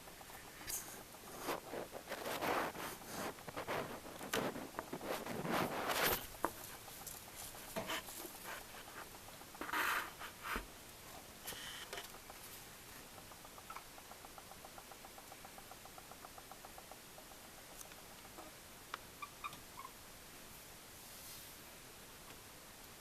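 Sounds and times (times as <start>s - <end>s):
soft rustling: 0.0s - 13.1s, 20.6s - 21.7s
faint fast clicking: 0.0s - 19.9s.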